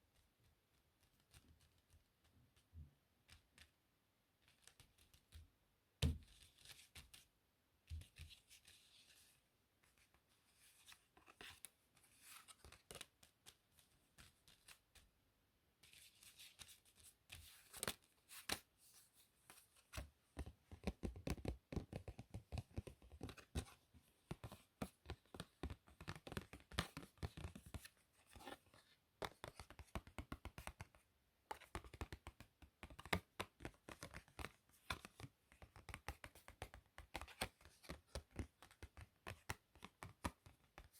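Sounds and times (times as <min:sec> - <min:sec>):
playing cards sliding and tapping: 0:07.9 - 0:14.8.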